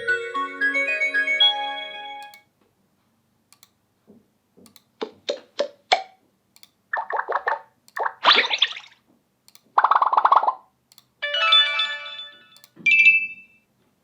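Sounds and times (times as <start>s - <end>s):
ringtone melody: 0.0s - 2.4s, 11.2s - 13.6s.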